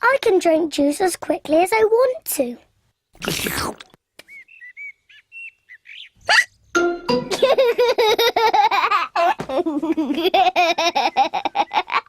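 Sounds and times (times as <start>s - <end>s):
cartoon gulp: 3.2s - 4.0s
birds twittering: 4.2s - 6.8s
cartoon pigs laughing: 7.3s - 12.0s.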